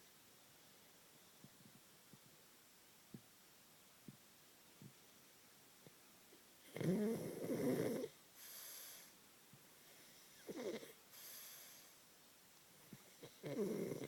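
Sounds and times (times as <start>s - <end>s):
rattling snores: 6.7s - 8.2s, 10.4s - 11.8s, 13.2s - 14.0s.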